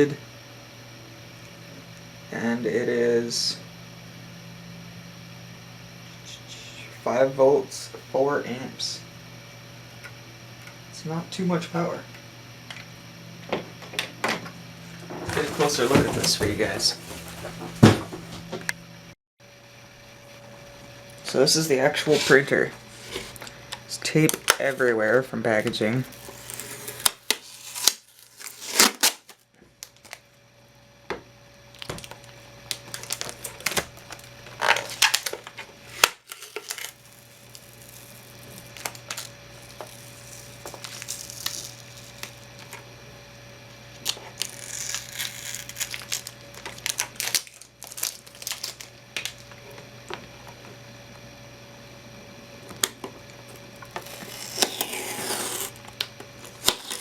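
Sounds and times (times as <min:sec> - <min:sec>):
packaging tape being peeled: 0:26.0 - 0:30.2, 0:31.8 - 0:42.8, 0:44.0 - 0:49.4, 0:53.8 - 0:57.0.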